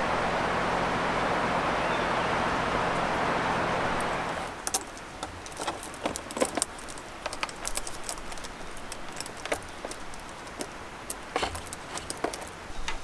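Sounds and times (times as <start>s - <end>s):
small hard objects clinking: 4.6s - 12.6s.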